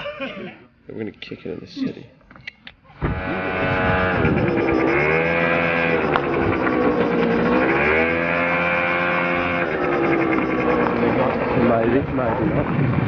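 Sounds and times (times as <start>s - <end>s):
scooter engine whining: 3.0s - 13.0s.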